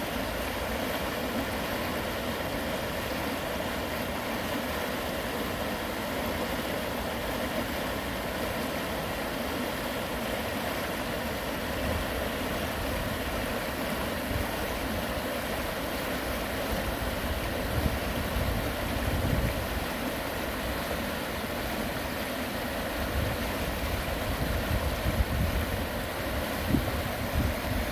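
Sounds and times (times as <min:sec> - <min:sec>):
stream water rushing: 0:00.0 - 0:27.9
wind buffeting microphone: 0:17.7 - 0:19.7, 0:24.0 - 0:27.9.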